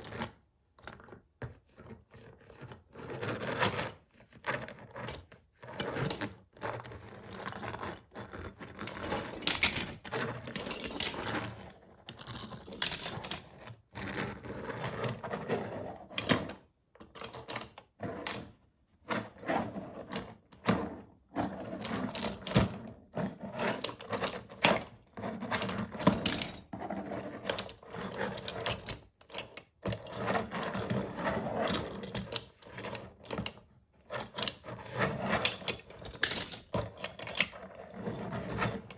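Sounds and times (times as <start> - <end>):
toy cars rolling and clattering: 7.4 - 13.5, 21.7 - 30.3, 31.0 - 33.6, 34.2 - 38.9.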